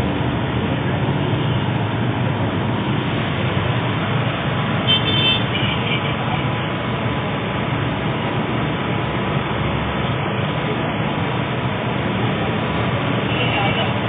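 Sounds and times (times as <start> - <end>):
road traffic rumble: 0.0 - 14.0
vehicle horn tooting: 4.9 - 6.2.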